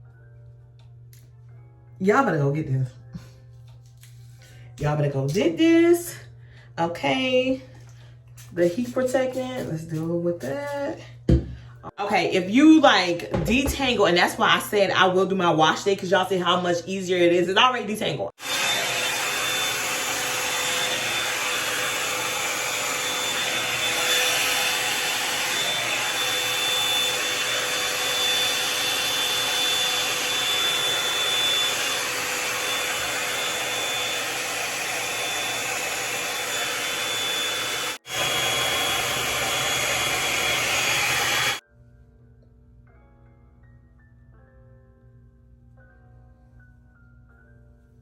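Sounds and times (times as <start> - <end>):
hair dryer brush whooshing: 18.4 - 41.6.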